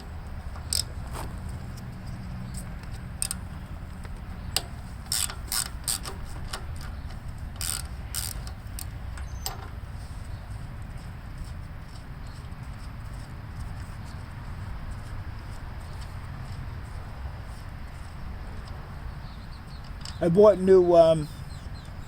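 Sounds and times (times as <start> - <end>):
low steady hum: 0.0 - 22.0
ratchet wrench clicking: 0.5 - 1.0, 3.2 - 3.4, 4.5 - 9.7.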